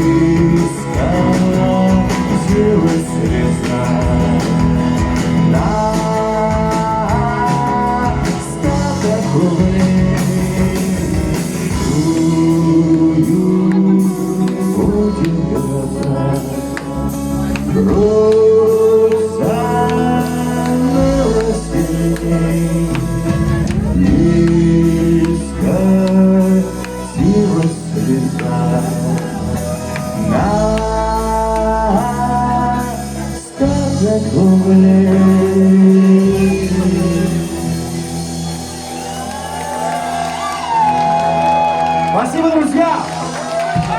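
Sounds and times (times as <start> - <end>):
strummed acoustic guitar: 0.0 - 38.0
man singing: 0.0 - 39.9.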